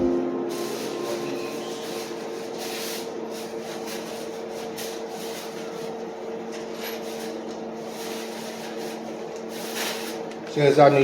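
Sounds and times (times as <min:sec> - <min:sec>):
electrical hum: 0:00.0 - 0:11.0.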